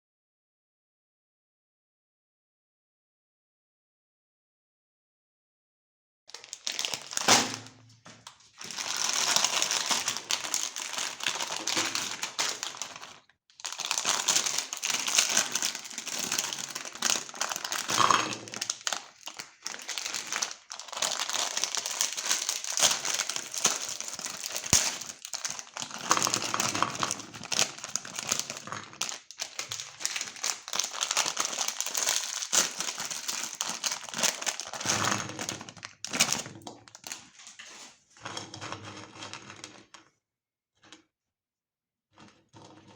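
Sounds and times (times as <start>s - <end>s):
plastic wrapper crinkling: 6.3s - 38.0s.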